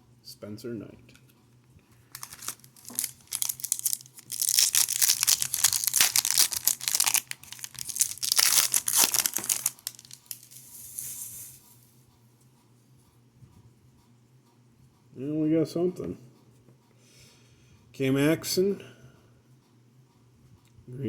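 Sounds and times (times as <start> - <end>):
plastic wrapper crinkling and tearing: 2.1 - 11.0.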